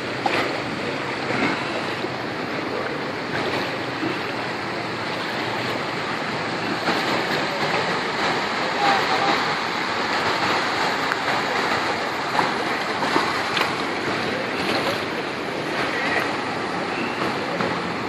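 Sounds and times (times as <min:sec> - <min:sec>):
heavy rain pouring: 0:00.0 - 0:18.0
raindrop taps: 0:10.1 - 0:15.0.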